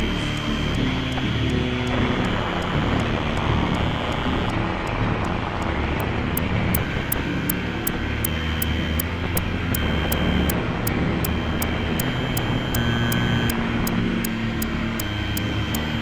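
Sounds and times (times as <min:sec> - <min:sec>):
high clicks: 0:05.3 - 0:14.4.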